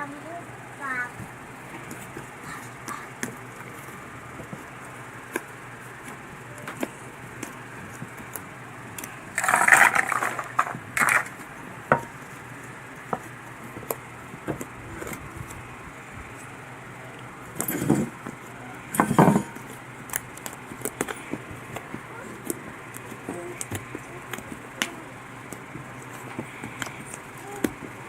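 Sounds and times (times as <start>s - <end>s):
slime crackling: 1.8s - 11.5s.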